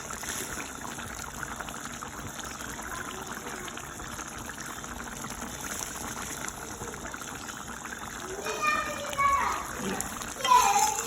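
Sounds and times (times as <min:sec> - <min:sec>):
pot bubbling and crackling: 0:00.0 - 0:11.0.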